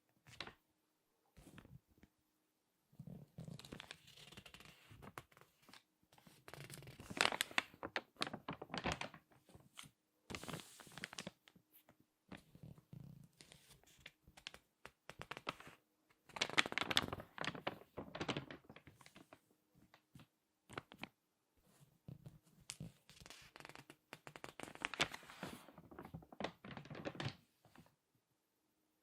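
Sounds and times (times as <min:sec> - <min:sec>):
magazine pages crackling: 0:03.6 - 0:11.4, 0:13.4 - 0:21.1, 0:22.6 - 0:27.9.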